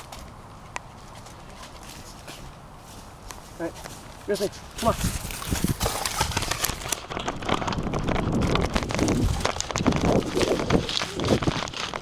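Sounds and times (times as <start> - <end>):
footsteps crunching: 0.0 - 12.0
rustling: 0.0 - 12.0
wind on microphone: 4.8 - 12.0.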